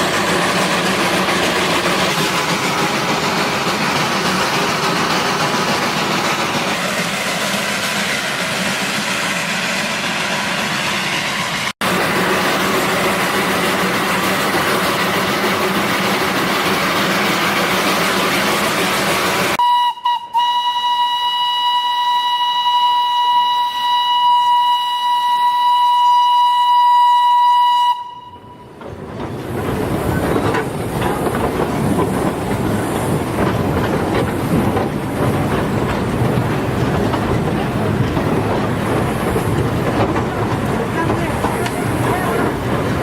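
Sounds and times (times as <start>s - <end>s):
train rumbling hiss: 0.0s - 43.0s
train whistle: 19.6s - 28.8s.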